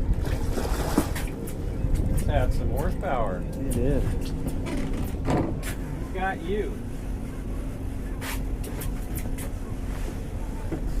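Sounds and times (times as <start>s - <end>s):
wind on microphone: 0.0s - 2.8s
boat motor humming: 0.0s - 11.0s.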